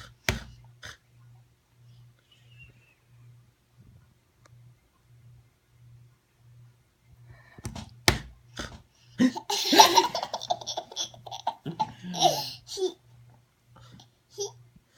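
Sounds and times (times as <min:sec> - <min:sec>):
baby laughing with squeals: 0:09.5 - 0:13.0.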